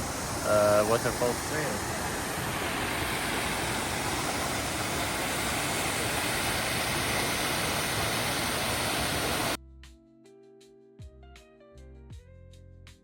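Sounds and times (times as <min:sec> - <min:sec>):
waterfall rushing: 0:00.0 - 0:09.6.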